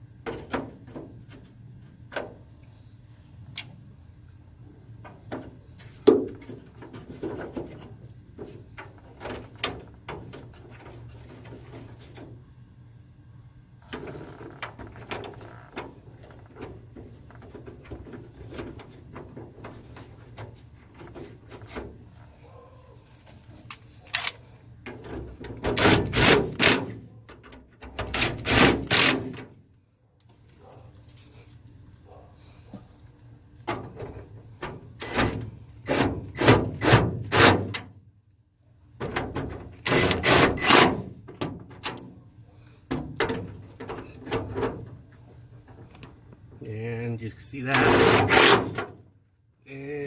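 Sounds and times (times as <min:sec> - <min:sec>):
tools working on plastic grille: 0:25.4 - 0:27.0, 0:28.0 - 0:29.4, 0:39.4 - 0:41.1, 0:47.7 - 0:48.9.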